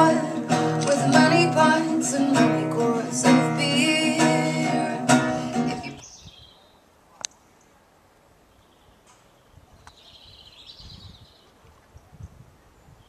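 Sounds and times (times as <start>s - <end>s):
acoustic guitar: 0.0s - 6.0s
person singing: 0.0s - 6.0s.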